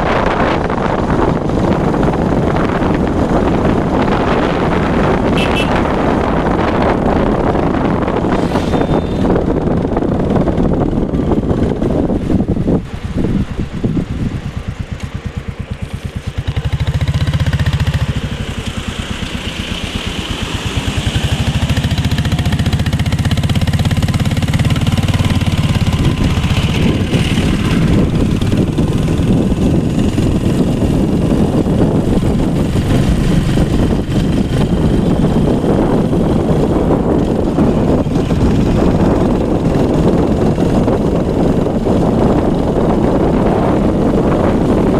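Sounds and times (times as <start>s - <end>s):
engine running: 0.0s - 44.9s
wind on microphone: 0.0s - 44.9s.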